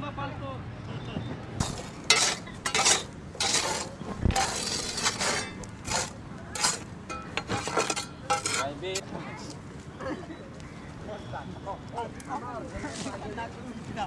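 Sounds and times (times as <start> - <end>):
rough rubbing and scraping: 1.6 - 9.0.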